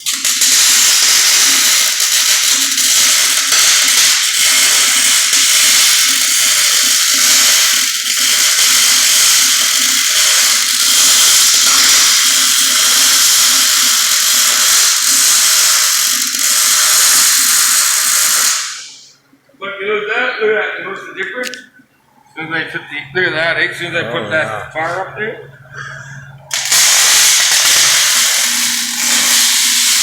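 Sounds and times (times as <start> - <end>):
welder arc crackling hiss: 0.0 - 19.2, 25.8 - 30.0.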